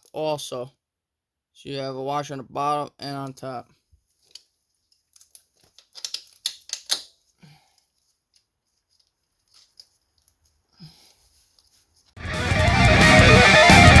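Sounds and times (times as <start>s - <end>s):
small metal parts clicking: 4.2s - 7.2s.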